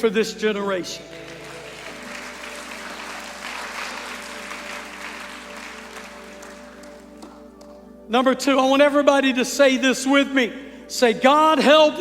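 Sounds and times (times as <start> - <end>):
soft church music chord: 0.0 - 12.0
congregation applauding: 0.8 - 7.9.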